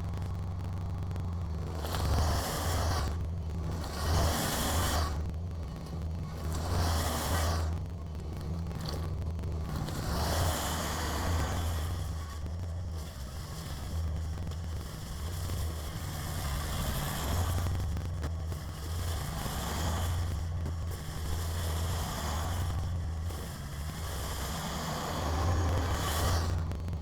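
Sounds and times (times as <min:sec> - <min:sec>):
snow blower rushing: 0:18.8 - 0:26.8.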